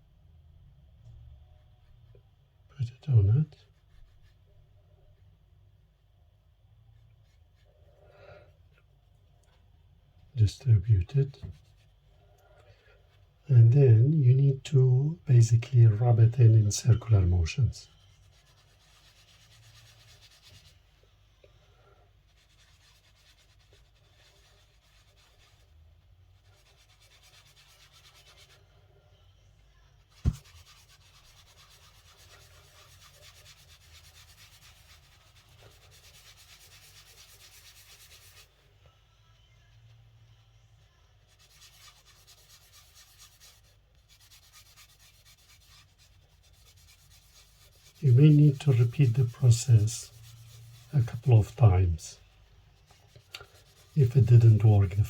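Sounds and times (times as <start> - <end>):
tissue rubbing on metal: 3.4 - 4.7, 7.2 - 7.9, 13.0 - 55.0.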